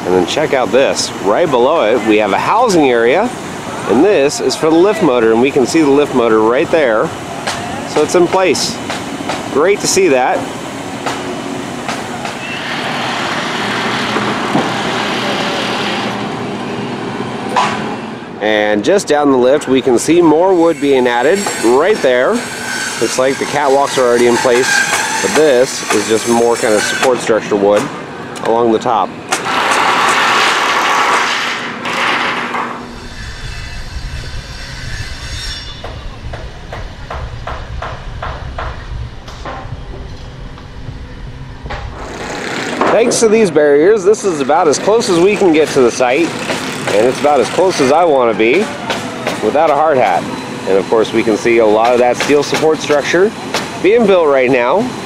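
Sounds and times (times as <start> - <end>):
road noise: 0.0 - 55.0
low engine rumble: 35.8 - 54.4
hammering nails into wood: 46.2 - 47.6, 51.8 - 53.8.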